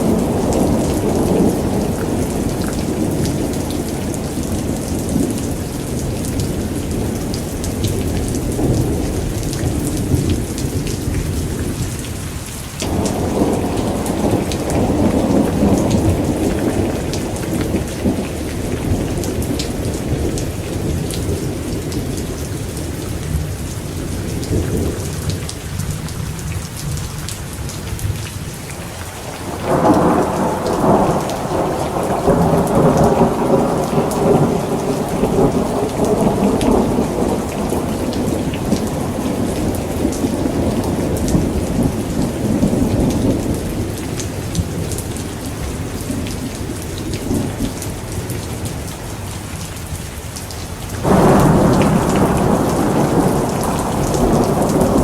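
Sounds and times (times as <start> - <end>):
rolling thunder: 0.0 - 12.2, 12.8 - 26.0, 29.1 - 48.9, 51.0 - 55.0
steady rain hiss: 0.0 - 55.0
thunder peal: 12.8 - 20.2, 51.0 - 55.0.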